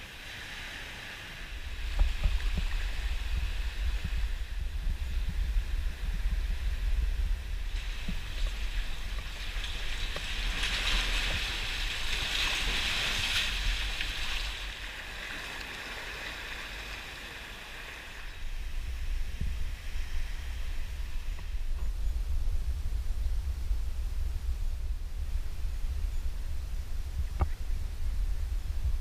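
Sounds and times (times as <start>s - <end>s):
sea water rushing and splashing: 0.0s - 21.7s
low rumble: 1.5s - 10.2s, 18.4s - 29.0s.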